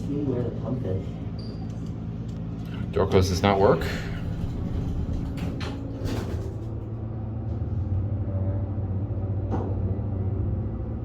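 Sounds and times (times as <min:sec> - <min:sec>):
elevator low hum: 0:00.0 - 0:11.0.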